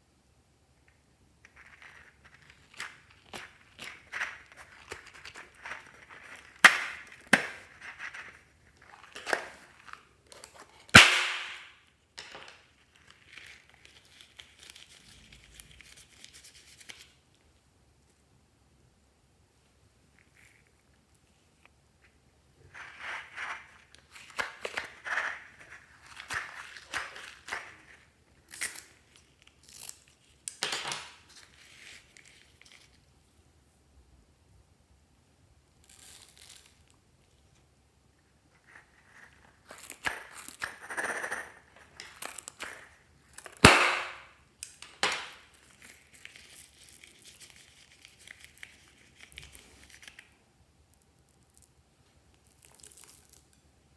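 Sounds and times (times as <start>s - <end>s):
air pops in slime: 11.0s - 11.7s, 43.7s - 44.2s.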